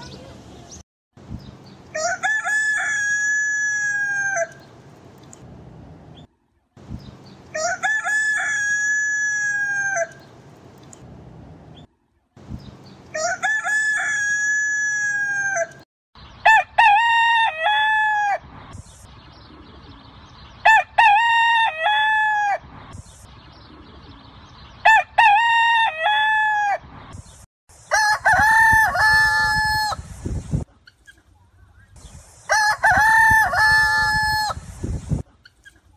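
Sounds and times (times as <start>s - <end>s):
roosters crowing: 1.9s - 4.6s, 7.5s - 10.3s, 13.1s - 15.8s, 16.4s - 18.5s, 20.6s - 22.7s, 24.8s - 26.9s, 27.9s - 30.1s, 32.5s - 34.7s.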